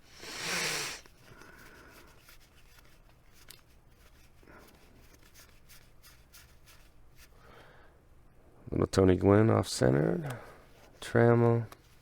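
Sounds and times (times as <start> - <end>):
cards being flipped by hand: 1.0 - 7.3.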